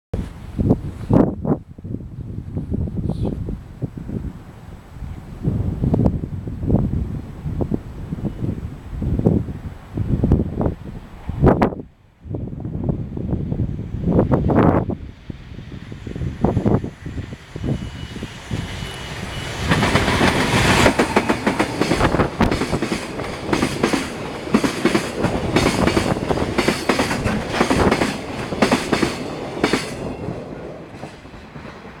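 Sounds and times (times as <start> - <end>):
train rumble: 12.3 - 32.0
train wheels clacking: 17.6 - 32.0.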